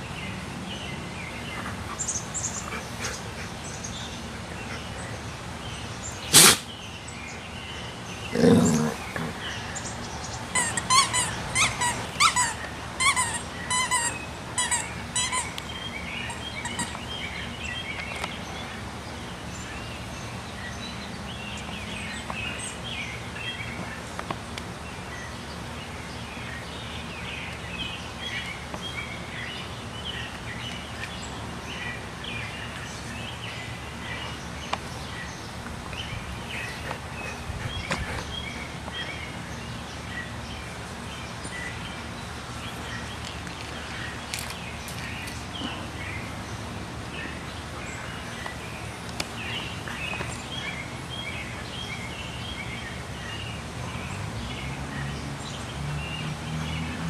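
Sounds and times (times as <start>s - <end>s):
birds chirping: 0.0s - 57.0s
dog sneezing: 6.3s - 6.7s
dog snorting: 8.3s - 9.5s.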